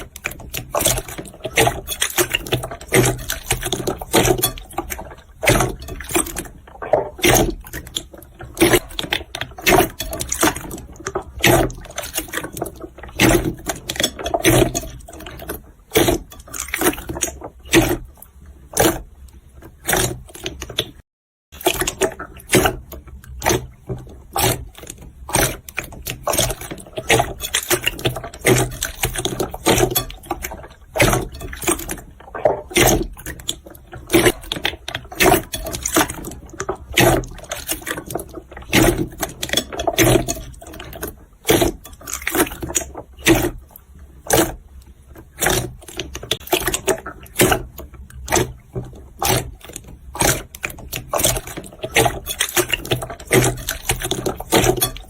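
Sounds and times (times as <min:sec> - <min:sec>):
slime squelching and popping: 0:21.6 - 0:44.7, 0:45.3 - 0:55.0.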